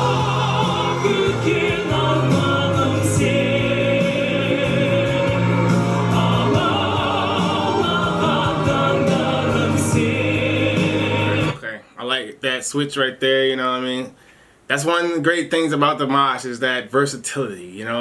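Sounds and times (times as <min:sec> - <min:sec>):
band accompaniment: 0:00.0 - 0:11.6
man singing a ballad: 0:00.0 - 0:11.6.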